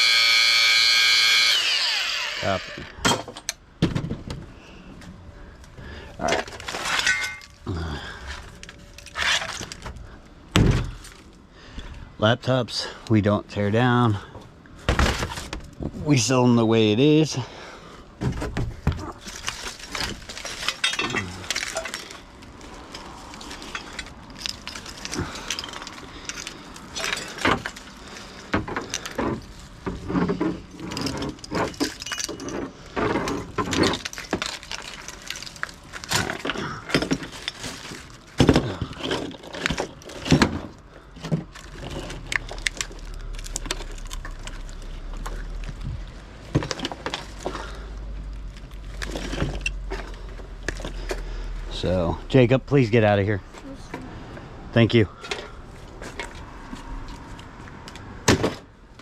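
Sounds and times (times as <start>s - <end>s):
scrap metal and plastic clanking: 6.2s - 7.6s, 8.3s - 11.2s, 18.2s - 47.9s, 48.5s - 51.3s.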